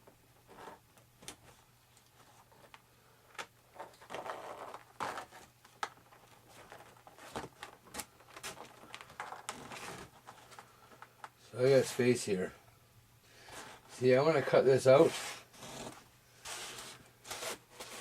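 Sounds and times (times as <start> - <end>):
rustling scrapes: 3.8 - 5.5, 13.4 - 18.0.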